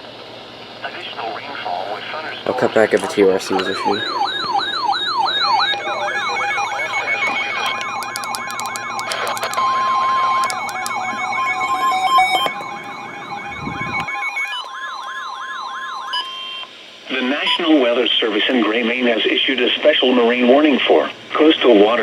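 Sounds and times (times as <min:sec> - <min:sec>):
sweeping siren-like alarm: 0:03.0 - 0:16.7.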